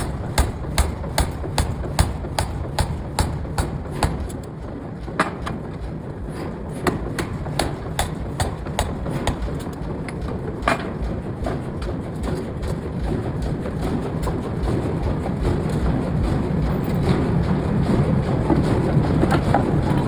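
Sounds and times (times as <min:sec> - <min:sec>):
air hammer striking hot steel: 0:00.0 - 0:04.6, 0:06.3 - 0:09.8
low rumble of machinery: 0:00.0 - 0:20.0.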